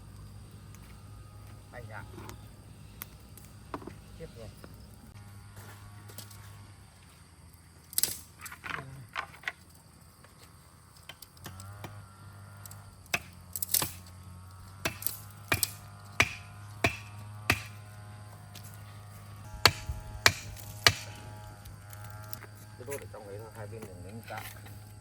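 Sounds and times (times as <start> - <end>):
sharp knocks: 14.8 - 17.8, 19.6 - 21.2.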